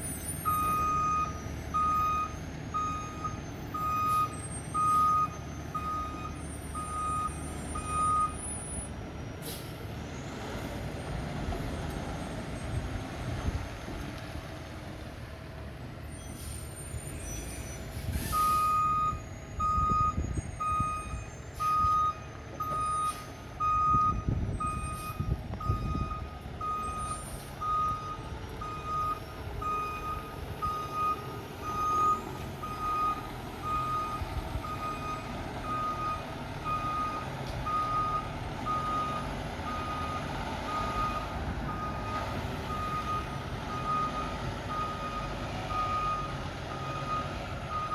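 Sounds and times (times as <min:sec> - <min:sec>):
truck reversing alarm beeping: 0:00.0 - 0:11.1, 0:16.0 - 0:47.9.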